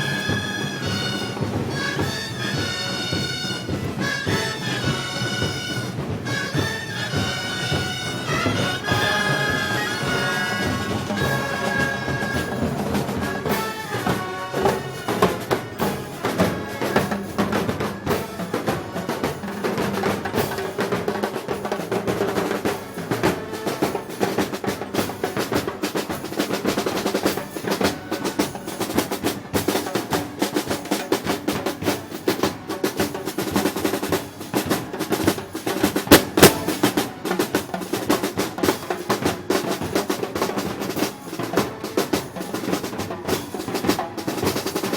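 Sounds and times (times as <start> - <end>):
held wind melody: 0.0 - 20.4
snare drums rolling: 0.0 - 44.9.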